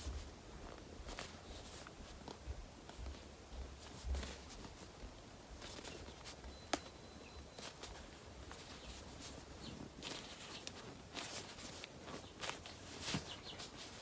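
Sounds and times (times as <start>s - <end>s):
foam toy rustling and scraping: 0.0s - 2.2s, 7.7s - 14.0s.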